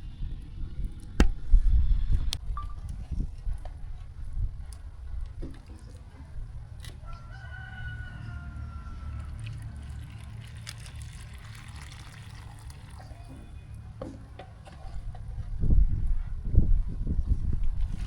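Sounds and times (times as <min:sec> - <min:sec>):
steady low rumble: 0:00.0 - 0:05.4
rooster crowing: 0:06.9 - 0:09.8.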